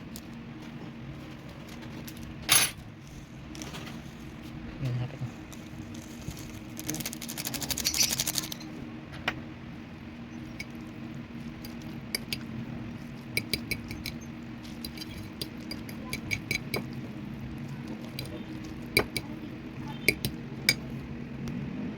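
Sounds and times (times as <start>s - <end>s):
steady low hum: 0.0s - 21.9s
utensils clinking against bowl: 11.6s - 20.9s.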